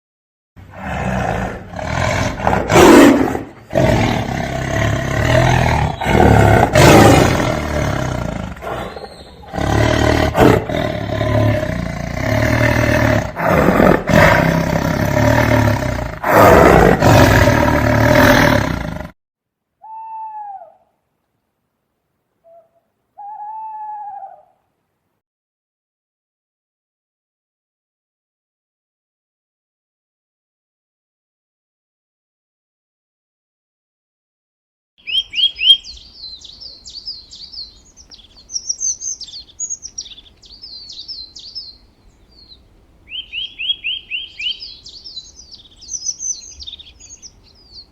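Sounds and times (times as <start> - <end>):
big cat roaring and growling: 0.7 - 19.2.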